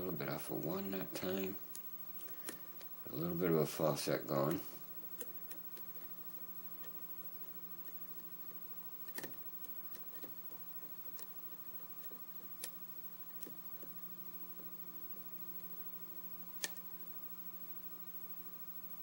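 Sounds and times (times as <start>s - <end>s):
low electrical hum: 0.0s - 19.0s.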